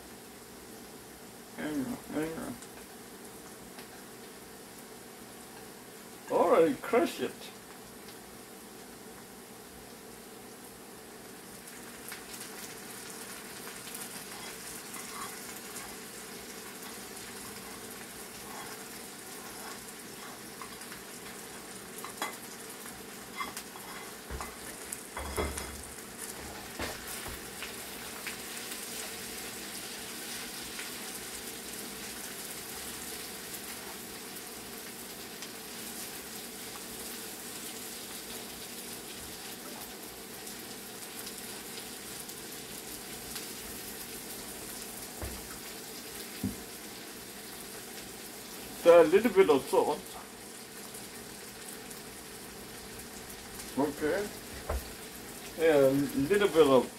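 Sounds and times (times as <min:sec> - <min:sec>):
chicken sizzling in hot oil: 0:00.0 - 0:56.9
dull thump: 0:45.2 - 0:45.5, 0:54.6 - 0:54.9.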